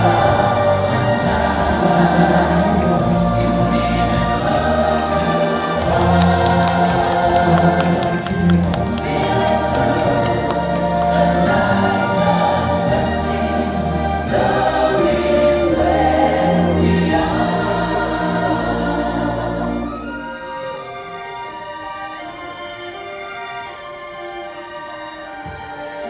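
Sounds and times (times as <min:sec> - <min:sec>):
choir singing: 0:00.4 - 0:08.3.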